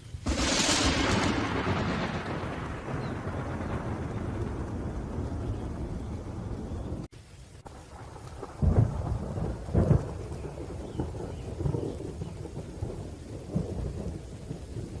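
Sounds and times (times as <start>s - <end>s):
rain hiss: 0.0s - 15.0s
thunder rumble: 0.0s - 15.0s.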